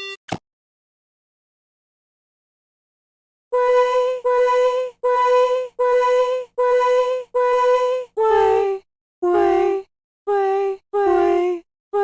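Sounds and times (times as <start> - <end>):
high voice singing held notes: 3.6 - 12.0.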